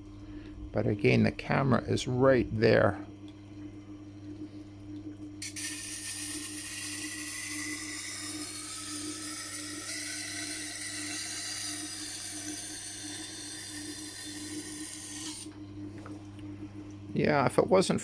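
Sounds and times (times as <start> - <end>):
grinder motor hum: 0.0 - 17.5
blade grinding on a wet stone: 5.4 - 15.5.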